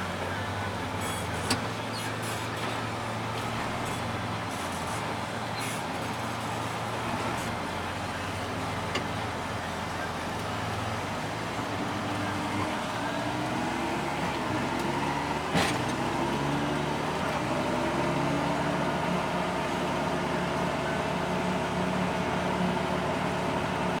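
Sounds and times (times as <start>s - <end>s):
combine harvester droning: 0.0s - 24.0s.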